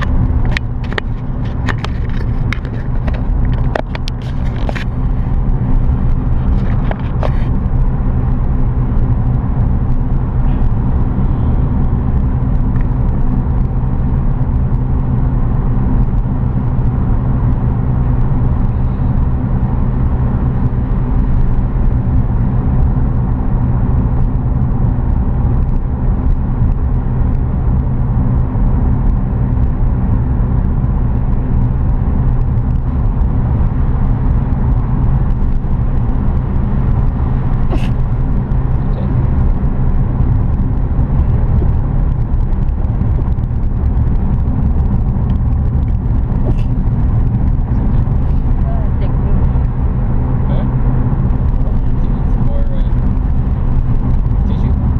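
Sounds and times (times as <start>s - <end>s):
car engine and road rumble: 0.0s - 54.9s.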